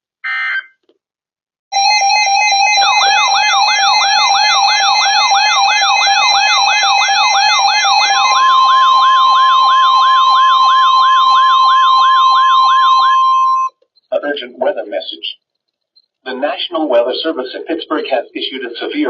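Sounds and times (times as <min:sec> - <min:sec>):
steady alert tone: 0:02.7 - 0:14.7
rising siren-like whoop: 0:02.9 - 0:13.7
higher steady tone: 0:05.8 - 0:13.7.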